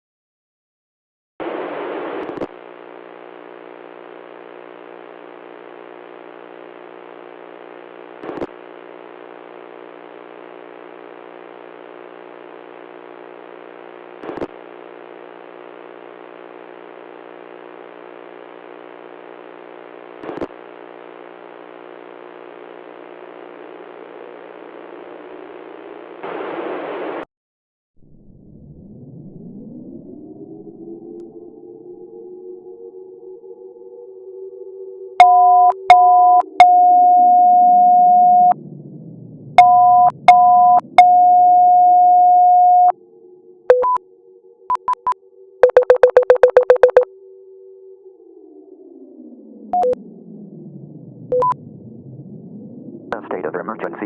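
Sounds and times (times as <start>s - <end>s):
buzzing static with hum: 1.4s - 27.2s, 44.8s - 47.1s, 51.1s - 51.8s, 53.1s - 54.0s
brief crackle: 14.2s - 14.6s.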